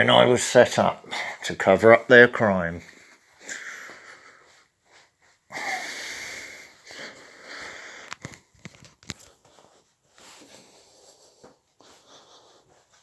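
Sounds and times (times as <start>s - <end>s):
breathing close to microphone: 2.9s - 8.9s.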